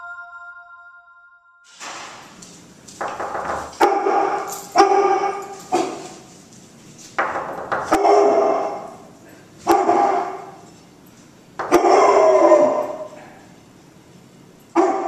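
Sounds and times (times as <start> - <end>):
dog barking: 3.8 - 6.0, 7.8 - 10.6, 11.6 - 13.3, 14.7 - 15.0.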